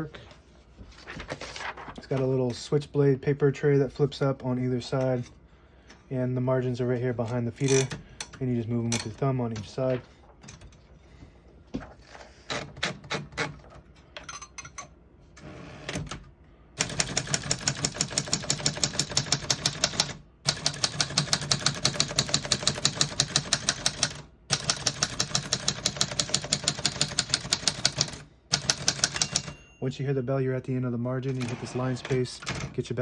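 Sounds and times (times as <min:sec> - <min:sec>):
typewriter keystrokes: 0:16.8 - 0:29.7.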